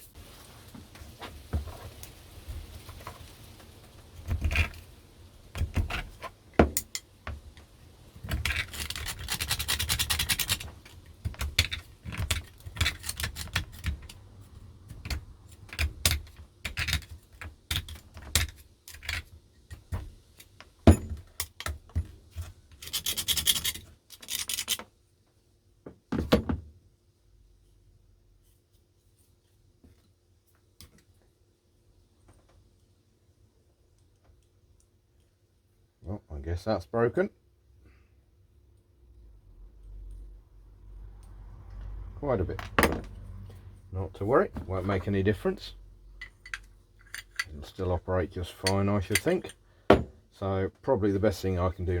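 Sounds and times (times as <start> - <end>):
metal parts knocking and clinking: 20.8 - 21.8, 46.2 - 47.5, 48.5 - 50.2.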